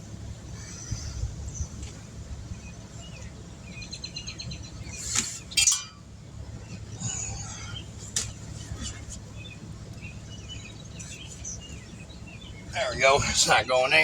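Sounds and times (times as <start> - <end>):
low hum: 0.0 - 13.4
birds chirping: 0.0 - 14.0.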